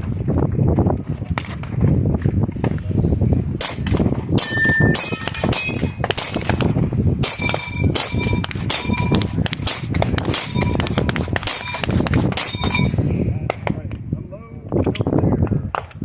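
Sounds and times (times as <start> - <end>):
pistol shots: 3.6 - 13.7
steel targets ringing: 4.4 - 6.6, 7.2 - 9.2, 10.4 - 10.8, 11.5 - 13.0.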